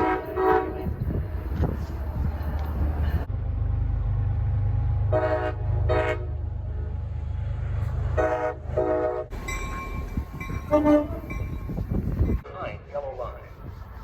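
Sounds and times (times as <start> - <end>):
train horn blasts: 0.0 - 1.1, 5.1 - 6.9, 8.2 - 9.5, 10.5 - 12.8
train rumbling: 0.0 - 14.0.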